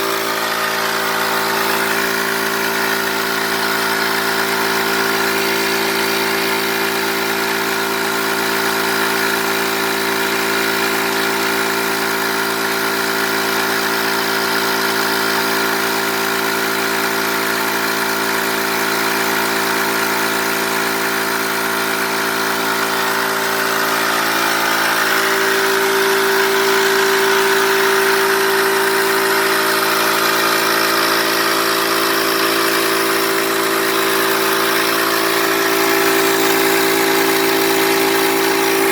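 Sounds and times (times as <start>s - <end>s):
air compressor humming: 0.0s - 38.9s.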